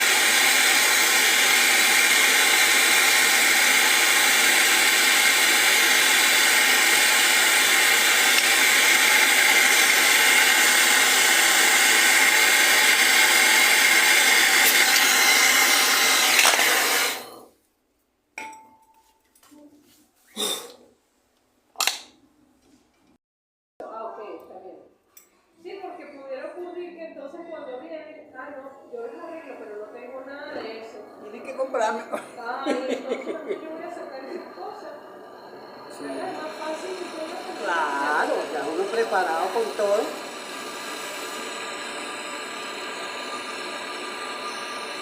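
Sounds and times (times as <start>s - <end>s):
small electric machine whirring: 0.0s - 17.5s, 29.2s - 45.0s.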